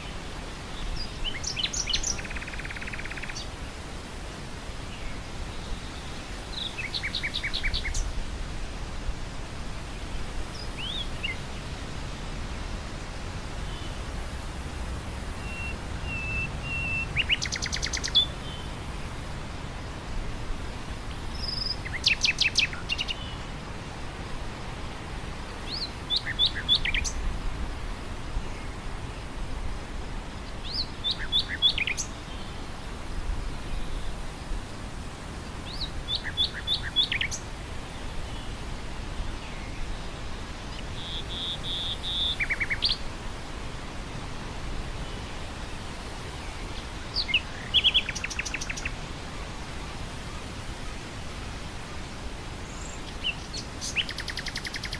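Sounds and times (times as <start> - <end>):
wind through grass: 0.0 - 54.9
nightingale singing: 0.8 - 3.5, 6.5 - 8.1, 15.4 - 18.8, 21.3 - 23.5, 25.6 - 27.2, 30.6 - 32.5, 35.6 - 37.5, 40.7 - 43.0, 47.1 - 49.0, 52.6 - 54.9.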